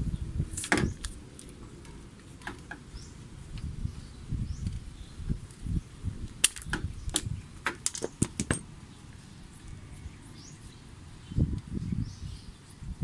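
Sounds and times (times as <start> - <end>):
handling knocks and rustling: 6.4 - 8.7
sharp metal and plastic clicks: 6.4 - 8.7.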